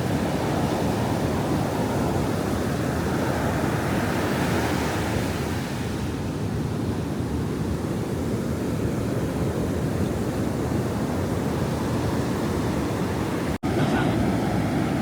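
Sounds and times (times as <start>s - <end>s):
ocean surf washing in: 10.4s - 15.0s.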